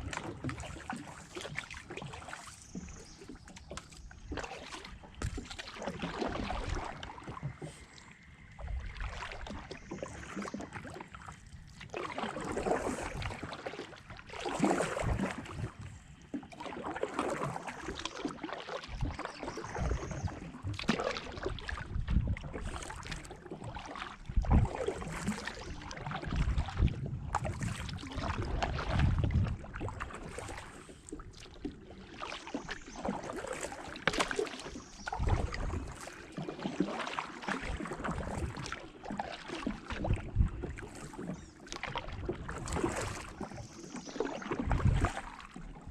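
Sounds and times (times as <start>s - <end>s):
paddle strokes splashing water: 0.0s - 45.9s.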